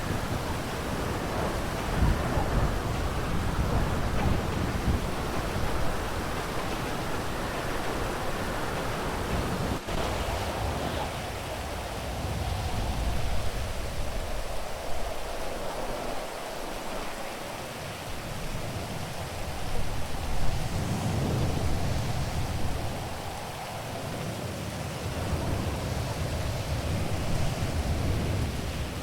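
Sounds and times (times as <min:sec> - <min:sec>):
thunder rumbling: 0:00.0 - 0:11.1
steady rain falling: 0:00.0 - 0:29.0.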